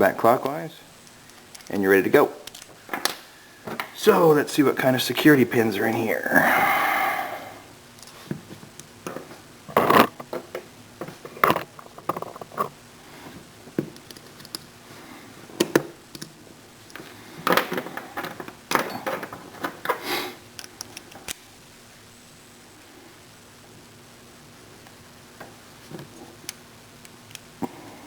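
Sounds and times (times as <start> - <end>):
small metal parts clicking and clinking: 2.4 - 2.8.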